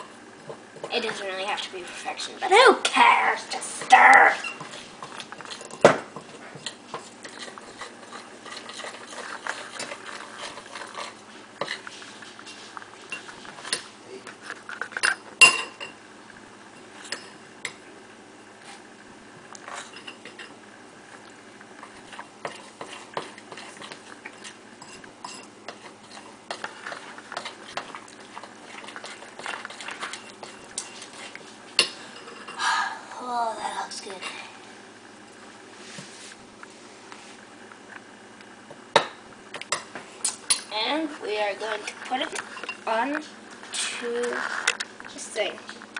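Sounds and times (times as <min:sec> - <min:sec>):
spoon stirring batter in bowl: 0:03.8 - 0:15.9, 0:21.8 - 0:32.6.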